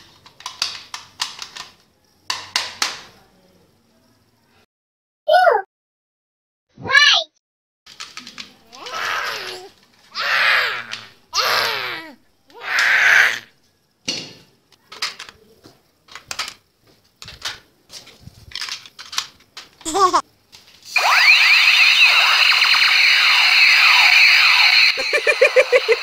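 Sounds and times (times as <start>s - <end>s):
toy gun clicks and zaps: 0.1s - 3.0s, 7.9s - 9.7s, 10.3s - 11.5s, 18.5s - 26.0s
electronic laser wail: 21.0s - 26.0s.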